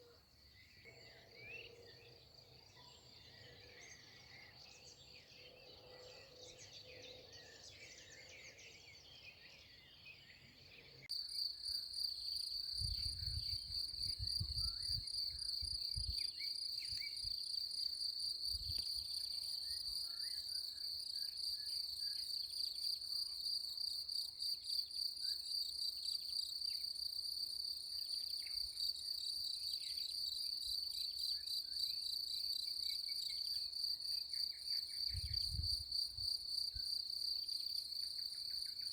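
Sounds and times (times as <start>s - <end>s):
wind rumble on microphone: 12.8s - 16.2s, 35.1s - 36.2s.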